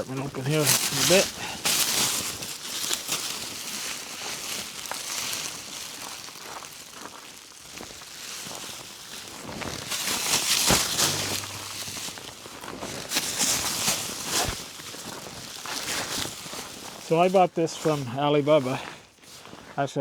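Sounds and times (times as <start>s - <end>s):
rustling: 0.7s - 17.1s
footsteps: 10.5s - 12.4s.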